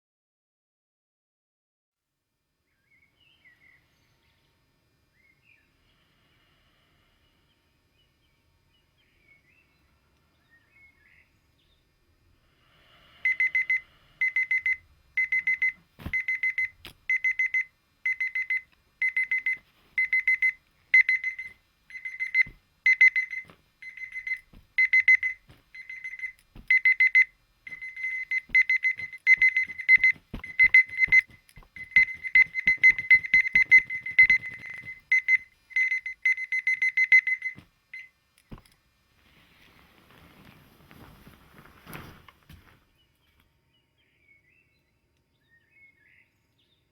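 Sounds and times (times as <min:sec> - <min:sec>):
alarm clock beeping: 0:13.2 - 0:38.1.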